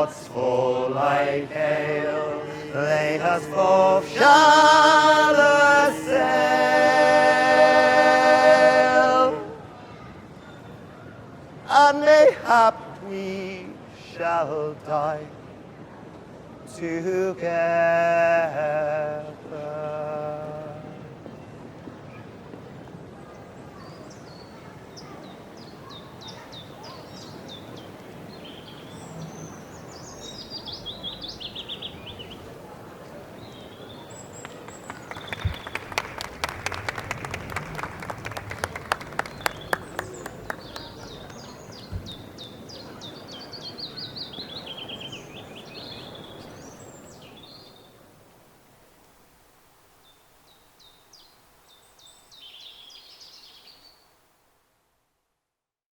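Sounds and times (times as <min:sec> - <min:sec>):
murmuring crowd: 0:00.0 - 0:11.8, 0:19.6 - 0:47.1
birdsong chirping trills: 0:24.0 - 0:32.5
people clapping: 0:34.3 - 0:42.0.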